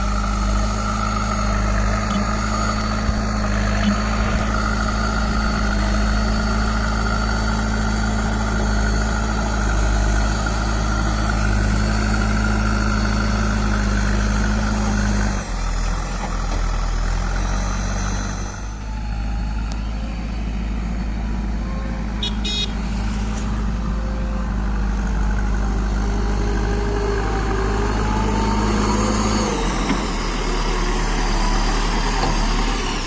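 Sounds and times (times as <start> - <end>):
high whine: 0.0 - 9.6
diesel engine running under load: 0.0 - 33.0.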